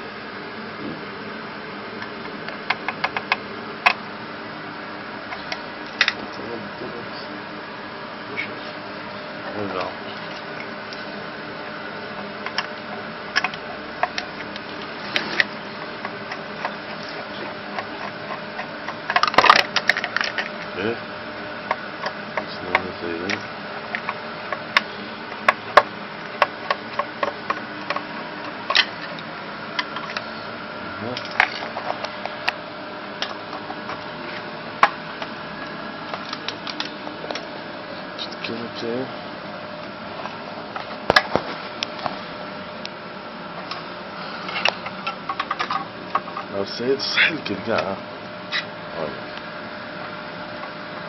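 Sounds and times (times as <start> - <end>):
steady hum: 0.0 - 51.0
clicks and knocks of tools: 44.5 - 46.5.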